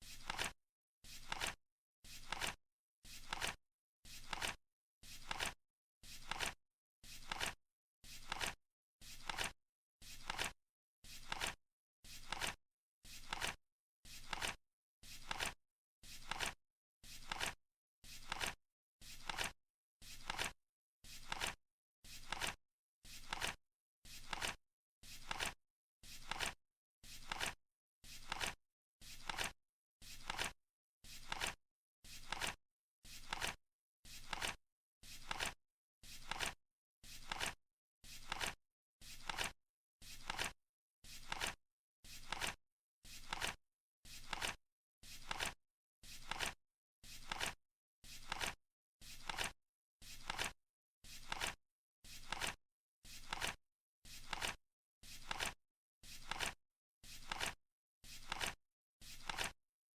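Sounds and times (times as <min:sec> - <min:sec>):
flip clock cards flapping: 0:00.2 - 0:00.5, 0:01.2 - 0:01.6, 0:02.2 - 0:02.6, 0:03.2 - 0:03.6, 0:04.2 - 0:04.6, 0:05.2 - 0:05.6, 0:06.2 - 0:06.6, 0:07.2 - 0:07.6, 0:08.2 - 0:08.6, 0:09.2 - 0:09.5, 0:10.2 - 0:10.5, 0:11.2 - 0:11.6, 0:12.2 - 0:12.6, 0:13.2 - 0:13.6, 0:14.2 - 0:14.6, 0:15.2 - 0:15.6, 0:17.2 - 0:17.6, 0:18.2 - 0:18.6, 0:19.2 - 0:19.5, 0:20.2 - 0:20.5, 0:21.2 - 0:21.6, 0:22.2 - 0:22.6, 0:23.2 - 0:23.6, 0:24.2 - 0:24.6, 0:25.2 - 0:25.6, 0:26.2 - 0:26.6, 0:27.2 - 0:27.6, 0:28.2 - 0:28.6, 0:29.2 - 0:29.5, 0:30.2 - 0:30.5, 0:31.2 - 0:31.6, 0:32.2 - 0:32.6, 0:33.2 - 0:33.6, 0:34.2 - 0:34.6, 0:35.2 - 0:35.6, 0:36.2 - 0:36.6, 0:37.2 - 0:37.6, 0:38.2 - 0:38.6, 0:39.2 - 0:39.5, 0:40.2 - 0:40.5, 0:41.2 - 0:41.6, 0:42.2 - 0:42.6, 0:43.2 - 0:43.6, 0:44.2 - 0:44.6, 0:47.2 - 0:47.6, 0:48.2 - 0:48.5, 0:49.2 - 0:49.5, 0:50.2 - 0:50.5, 0:51.2 - 0:51.6, 0:52.2 - 0:52.6, 0:53.2 - 0:53.6, 0:54.2 - 0:54.6, 0:55.2 - 0:55.6, 0:56.2 - 0:56.6, 0:57.2 - 0:57.6, 0:58.2 - 0:58.5, 0:59.2 - 0:59.5.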